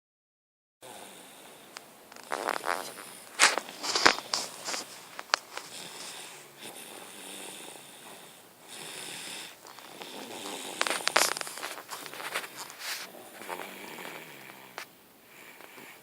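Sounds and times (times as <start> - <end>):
people snoring: 0.8 - 16.0.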